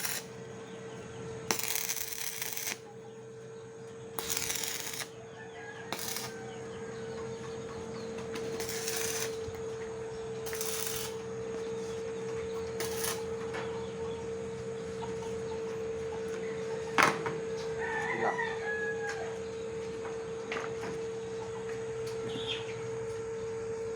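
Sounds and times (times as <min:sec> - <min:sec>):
steady hum: 0:00.0 - 0:15.9
rooster crowing: 0:05.1 - 0:07.3, 0:17.6 - 0:19.7.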